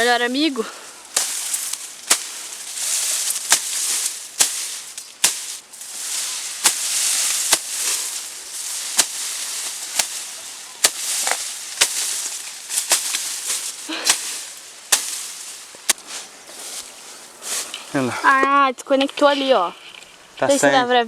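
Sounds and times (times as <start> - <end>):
leaves and stems rustling: 0.0 - 21.0
machete chopping brush: 1.1 - 17.9.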